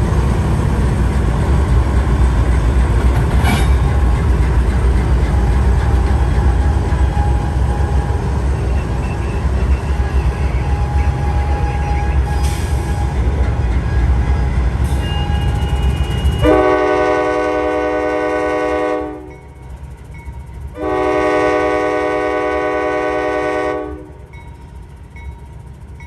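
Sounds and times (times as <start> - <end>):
freight train rumble: 0.0 - 26.0
locomotive air horn chord: 14.8 - 19.4, 20.8 - 24.2.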